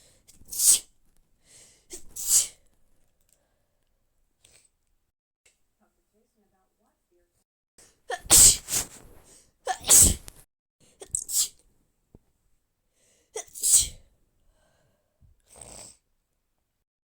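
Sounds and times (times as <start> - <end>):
faint breath: 1.4 - 1.9, 12.9 - 13.3, 14.5 - 15.2
person sneezing: 1.9 - 2.6, 8.1 - 9.1, 9.7 - 10.4, 11.0 - 11.6, 13.4 - 14.0.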